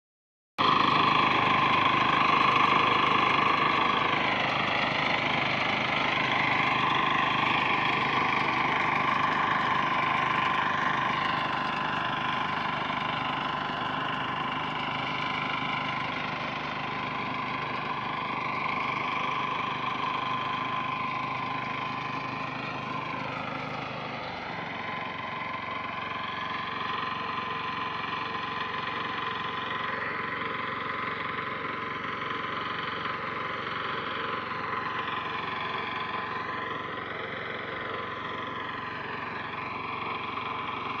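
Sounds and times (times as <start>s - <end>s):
harvester machine whining: 0.6s - 41.0s.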